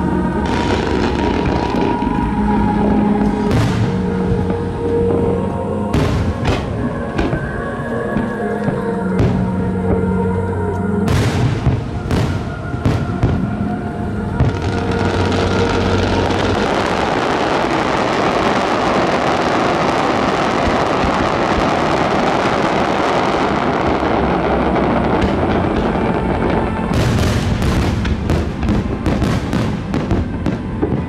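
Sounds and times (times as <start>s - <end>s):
faint music: 0.0s - 31.0s
fireworks bursts and crackling: 0.0s - 31.0s.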